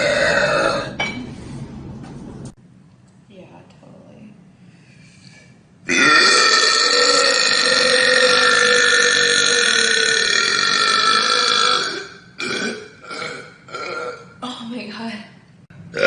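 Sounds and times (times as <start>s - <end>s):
long loud burp: 0.0s - 1.0s, 5.9s - 14.4s.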